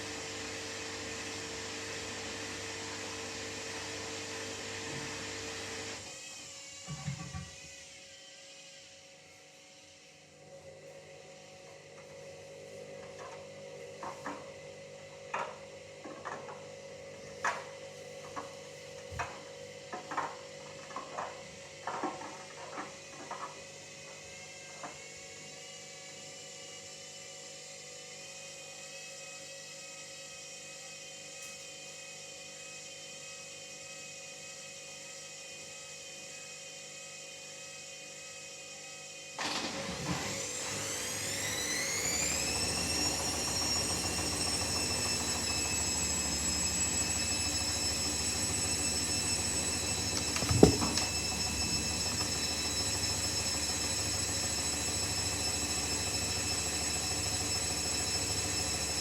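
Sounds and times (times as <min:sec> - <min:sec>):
washing machine motor whine: 0:00.0 - 0:22.1, 0:39.1 - 0:59.0
washing machine drum knocking: 0:50.2 - 0:51.2.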